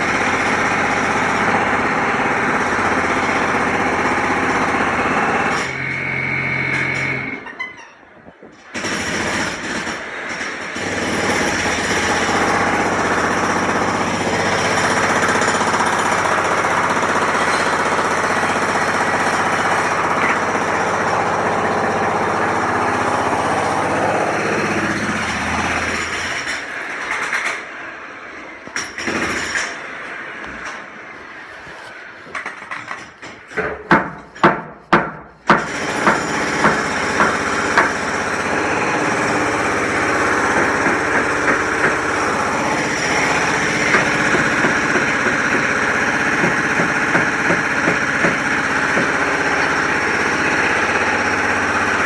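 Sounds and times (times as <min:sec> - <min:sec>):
jackhammer running: 0:00.0 - 0:07.4, 0:08.6 - 0:27.9, 0:28.6 - 0:30.4, 0:35.4 - 0:52.0
sharp knocks: 0:32.4 - 0:38.0, 0:46.4 - 0:49.2.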